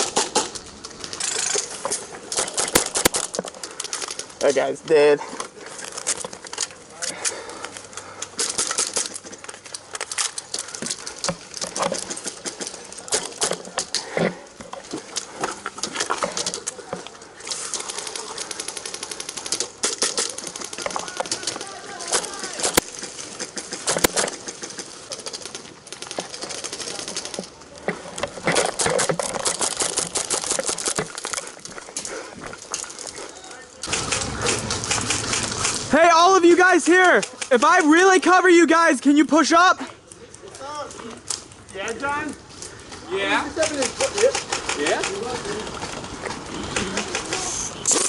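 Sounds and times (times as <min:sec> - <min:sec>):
airsoft guns firing: 0:00.0 - 0:00.6, 0:02.3 - 0:03.4, 0:17.6 - 0:24.9, 0:33.8 - 0:36.0
airsoft gunshots: 0:02.4 - 0:03.3, 0:33.9 - 0:35.9.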